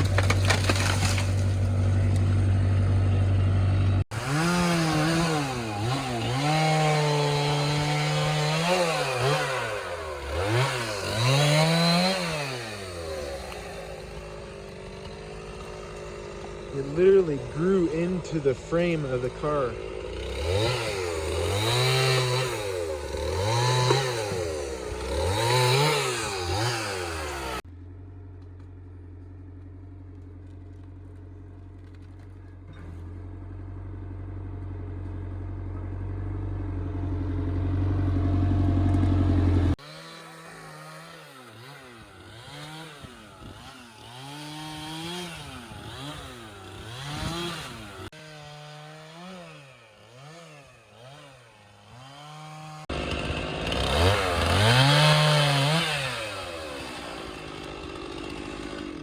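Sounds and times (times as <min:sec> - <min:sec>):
chainsaw revving: 0:00.0 - 0:27.7, 0:37.7 - 0:59.0
low engine drone rising in pitch: 0:33.2 - 0:39.8.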